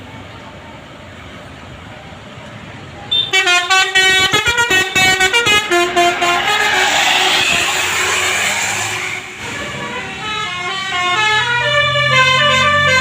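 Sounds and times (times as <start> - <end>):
multi-tone bus horn melody: 3.1 - 13.0
broad rushing noise: 4.3 - 10.2.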